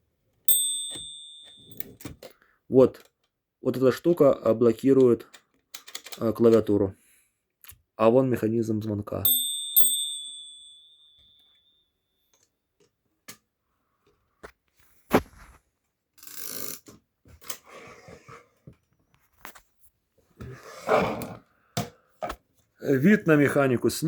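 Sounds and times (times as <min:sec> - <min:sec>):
typewriter carriage bell: 0:00.5 - 0:02.2.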